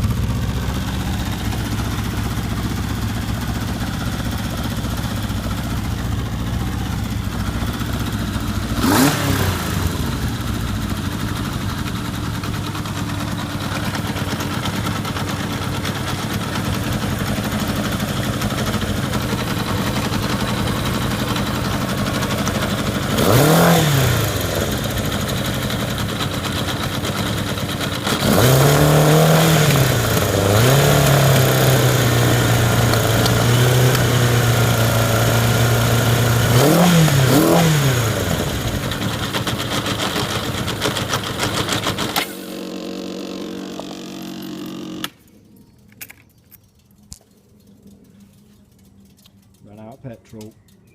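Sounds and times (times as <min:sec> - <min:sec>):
engine idling and revving: 0:00.0 - 0:50.6.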